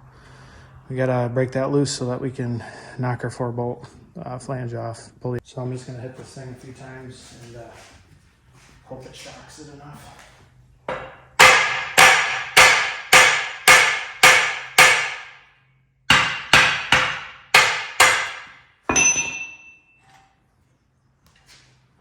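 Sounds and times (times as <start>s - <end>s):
hammer striking metal axle: 10.9s - 15.5s, 16.1s - 19.9s.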